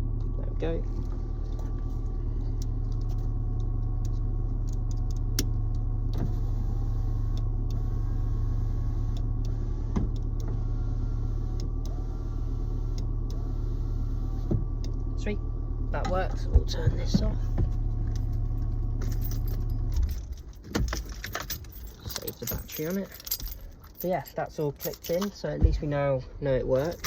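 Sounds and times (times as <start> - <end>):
low car hum: 0.0 - 27.0
electric window motor: 6.0 - 15.7.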